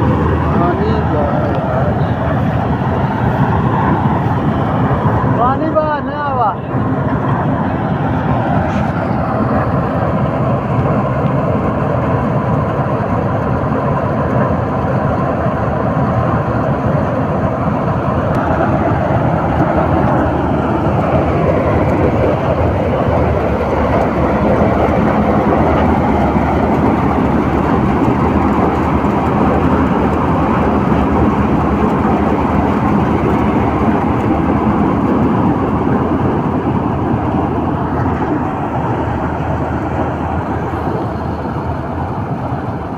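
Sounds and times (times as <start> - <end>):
combine harvester running: 0.0 - 42.9.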